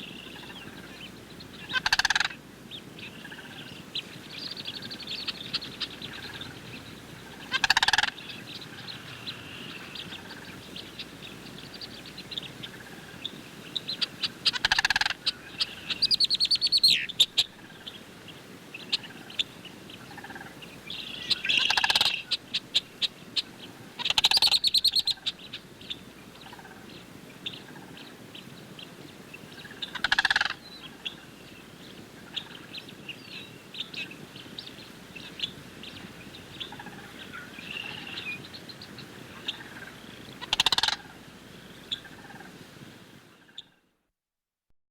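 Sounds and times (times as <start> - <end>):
cranes giving rattling calls: 1.6 - 2.4, 5.5 - 10.6, 14.0 - 16.1, 20.0 - 22.4, 24.0 - 25.4, 29.8 - 31.1, 39.2 - 41.2.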